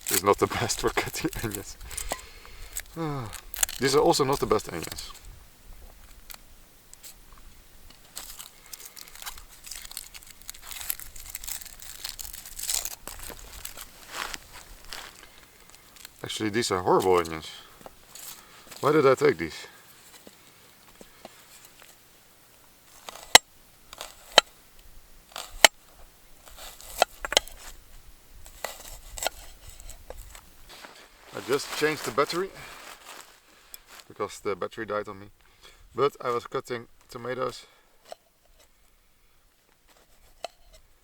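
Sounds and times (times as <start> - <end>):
knife cutting onion crunching: 0.0 - 2.2, 8.1 - 15.3.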